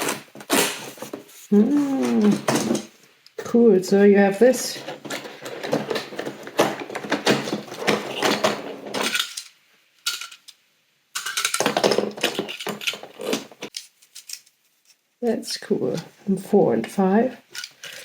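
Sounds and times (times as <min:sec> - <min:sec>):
toy cars clicking and rattling: 0:05.0 - 0:10.6, 0:11.2 - 0:14.4.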